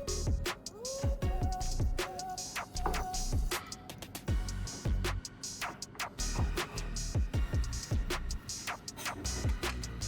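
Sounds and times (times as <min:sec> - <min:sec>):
sharp percussion: 0:00.0 - 0:10.0
deep drum hits: 0:04.3 - 0:05.2.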